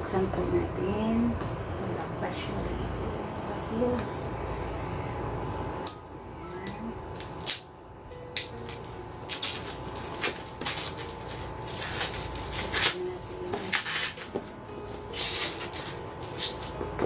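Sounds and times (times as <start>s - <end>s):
cardboard box packaging rustling: 8.6s - 17.0s.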